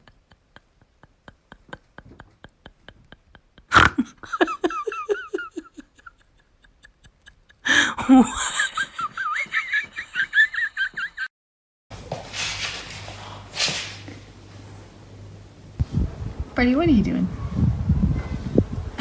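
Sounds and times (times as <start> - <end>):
person laughing: 0.0 - 11.3.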